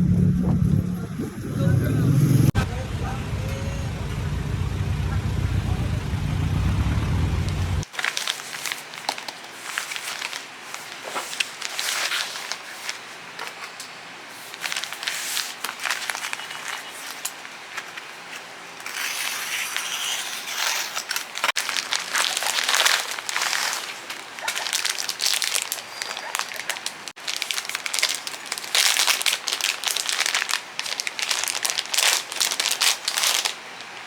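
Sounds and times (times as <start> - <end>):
material crinkling and rustling: 7.5 - 19.2, 20.1 - 34.0.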